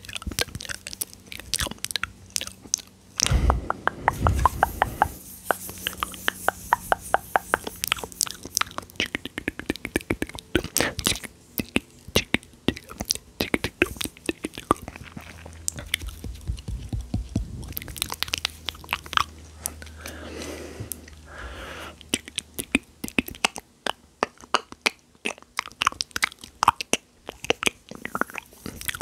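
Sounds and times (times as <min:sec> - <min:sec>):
wet mouth clicks and smacks: 0:00.0 - 0:20.0, 0:22.0 - 0:29.0
breathing: 0:03.2 - 0:05.2, 0:19.6 - 0:22.0.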